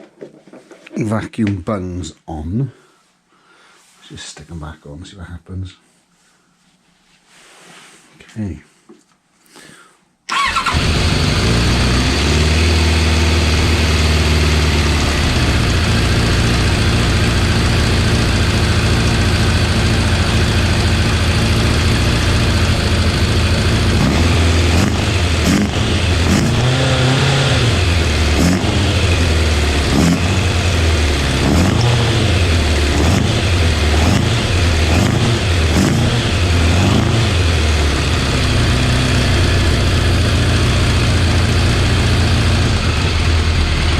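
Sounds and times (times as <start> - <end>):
motorcycle engine idling: 10.3 - 43.9
motorcycle engine revving: 10.3 - 43.9.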